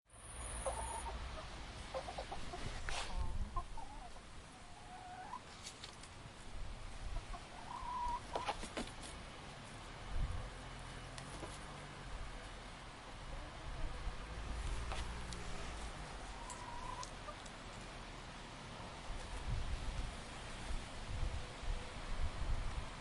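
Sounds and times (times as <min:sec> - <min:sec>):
hens clucking: 0:00.5 - 0:05.6, 0:07.0 - 0:09.2, 0:16.0 - 0:17.6.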